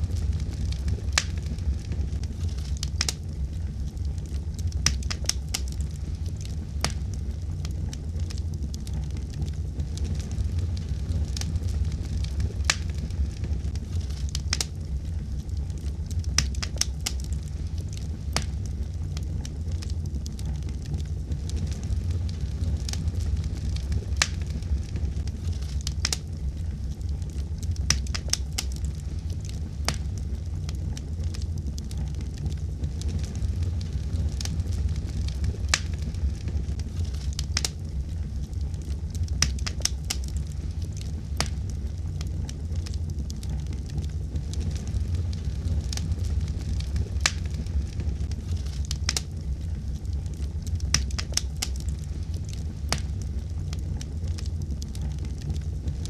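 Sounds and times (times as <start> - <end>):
fire crackling and popping: 0.0 - 56.0
low rumble of flames: 0.0 - 56.0.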